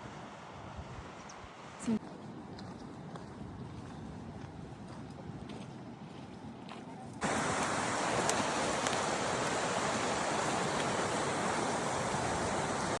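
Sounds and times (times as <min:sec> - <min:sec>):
rushing water: 0:07.2 - 0:13.0.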